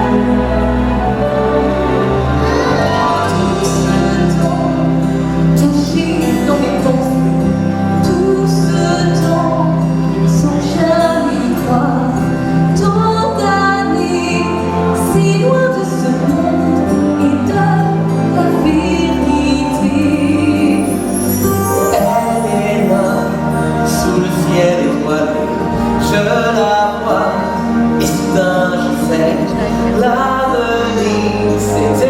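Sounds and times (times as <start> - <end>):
orchestral backing track: 0.0 - 32.0
woman singing: 5.6 - 25.2.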